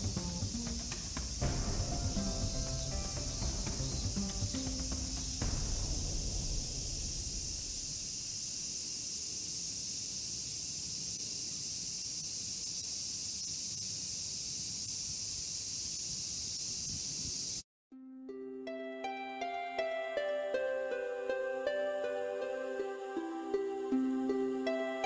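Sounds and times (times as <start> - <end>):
soft piano music: 0.0 - 7.3, 17.9 - 25.0
insect chorus: 0.0 - 17.6, 20.5 - 25.0
low rumble: 1.4 - 8.4.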